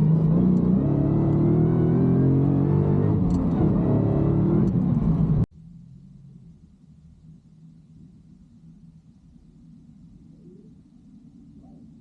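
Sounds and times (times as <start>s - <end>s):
car engine accelerating hard: 0.0s - 5.5s.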